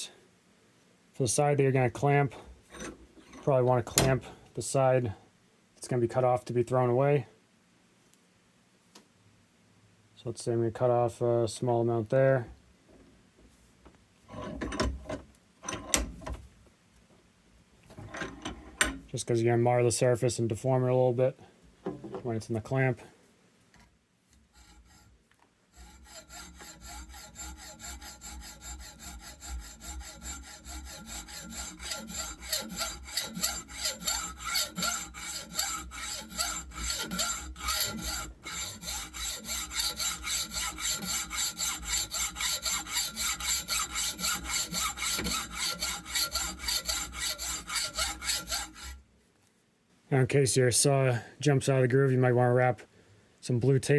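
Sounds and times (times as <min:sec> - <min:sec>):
hacksaw cutting metal tube: 0:24.5 - 0:25.1, 0:25.8 - 0:49.0.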